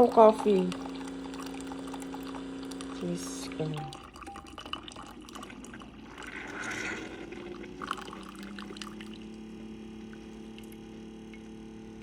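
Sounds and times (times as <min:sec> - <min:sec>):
coffee splashing into a cup: 0:00.0 - 0:09.4
coffee maker brewing: 0:00.0 - 0:12.0.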